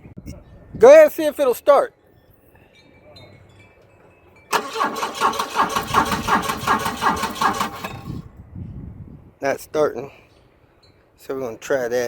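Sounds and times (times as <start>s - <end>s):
starter cranking engine: 4.5s - 8.2s.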